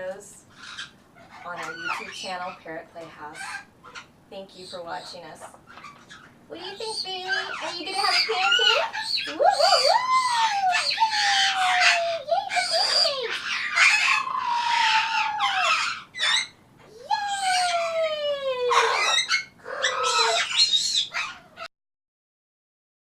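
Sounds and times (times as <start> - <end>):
parrot harsh screeches: 5.7 - 16.6, 18.7 - 21.7
parrot whistled calls: 5.7 - 16.6, 18.7 - 21.4.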